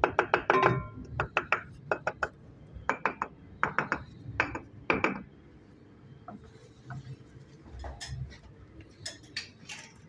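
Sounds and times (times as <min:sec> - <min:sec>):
masonry tools knocking: 0:00.1 - 0:01.6.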